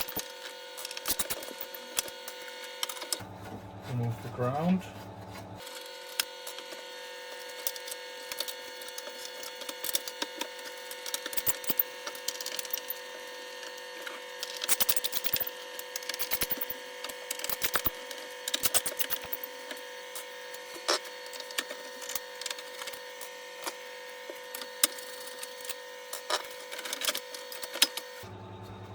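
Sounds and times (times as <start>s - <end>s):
small clicks and crackles of screwdriver: 0.0s - 3.2s, 7.4s - 13.0s, 14.4s - 23.0s.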